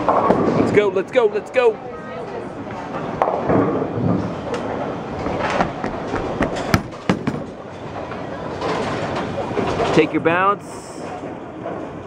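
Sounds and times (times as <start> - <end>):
bowling ball rolling on wooden lane: 3.0 - 9.8
bowling pins clattering: 3.1 - 9.9.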